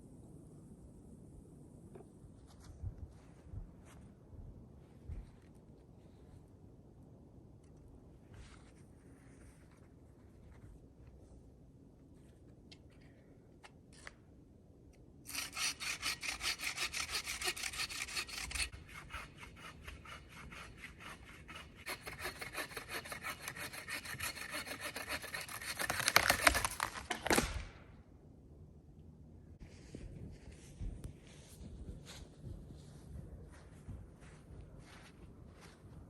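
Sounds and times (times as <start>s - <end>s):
hand saw cutting wood: 15.3s - 27.4s.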